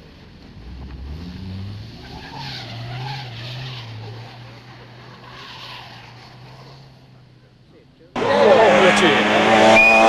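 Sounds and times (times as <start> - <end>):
tyres squealing and skidding: 1.7 - 7.5, 8.2 - 10.0
race car engine revving: 8.2 - 10.0.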